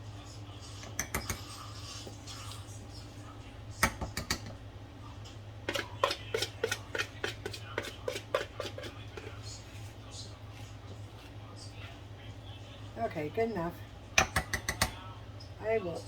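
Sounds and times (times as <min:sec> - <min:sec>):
utensils clinking on dishes: 0:05.7 - 0:09.4.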